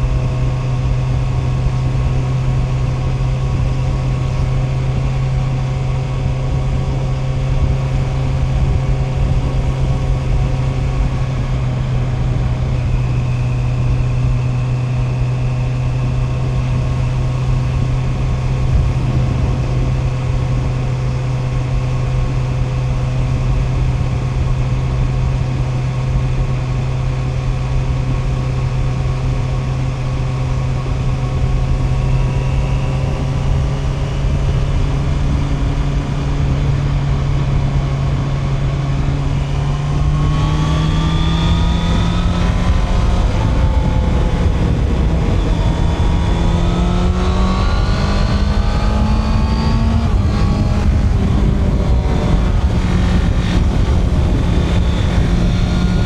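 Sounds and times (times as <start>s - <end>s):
motorcycle engine running: 0.0s - 56.0s.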